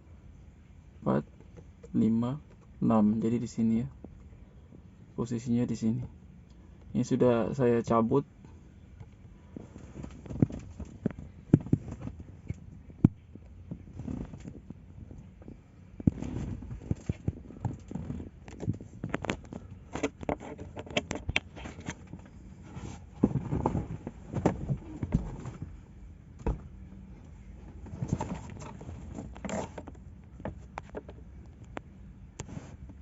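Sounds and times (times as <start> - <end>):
handling noise: 9.0 - 33.0
plastic parts clicking and knocking: 16.8 - 22.3.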